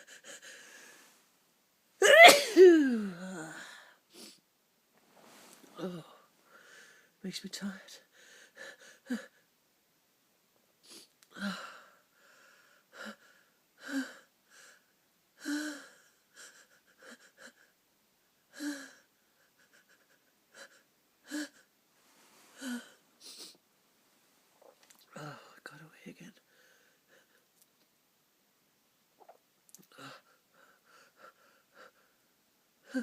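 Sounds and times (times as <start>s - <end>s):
wheezy catching breaths: 0.0s - 1.2s, 22.3s - 23.6s, 30.0s - 32.2s
person sneezing: 2.0s - 3.3s.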